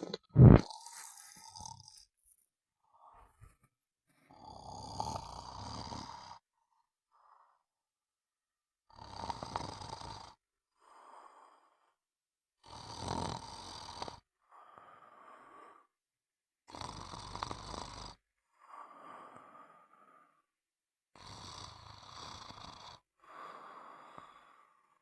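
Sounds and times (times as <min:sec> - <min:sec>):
soft breath: 0:02.8 - 0:04.3, 0:14.5 - 0:15.9, 0:18.5 - 0:20.5, 0:23.2 - 0:25.0
loud deep snoring: 0:04.3 - 0:06.5, 0:08.9 - 0:11.8, 0:12.6 - 0:15.9, 0:16.7 - 0:20.2, 0:21.1 - 0:24.8.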